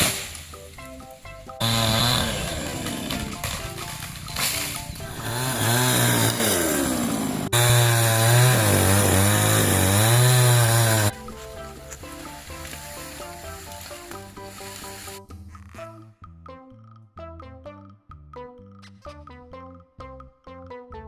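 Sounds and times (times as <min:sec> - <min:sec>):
chainsaw cutting into wood: 0:00.0 - 0:00.4, 0:01.6 - 0:11.2, 0:12.6 - 0:15.2
background music: 0:00.0 - 0:21.0.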